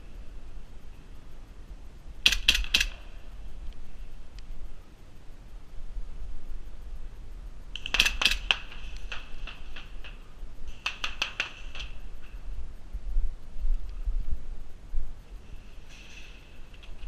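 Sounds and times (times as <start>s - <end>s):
airsoft gunfire bursts: 2.3s - 3.0s, 7.8s - 9.9s, 10.7s - 12.0s.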